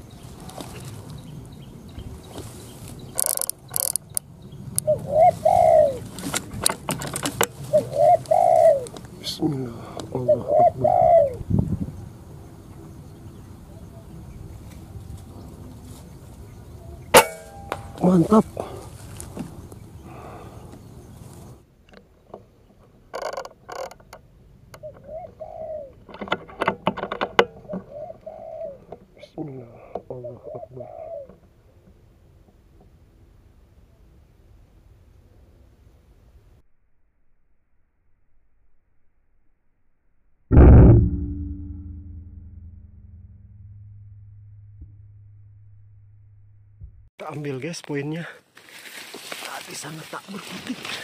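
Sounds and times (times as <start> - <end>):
sharp clicks and rustles: 3.2 - 4.3, 6.1 - 7.7
dove cooing: 4.8 - 6.2, 7.5 - 9.0, 9.8 - 11.5, 24.8 - 26.6, 27.5 - 31.5
steady noise: 40.5 - 46.8.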